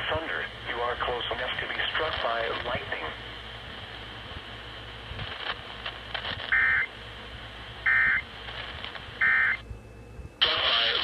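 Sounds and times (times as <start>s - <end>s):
hissy radio broadcast: 0.0s - 6.9s, 10.4s - 11.0s
digital data tone bursts: 6.5s - 6.9s, 7.9s - 8.2s, 9.2s - 9.6s.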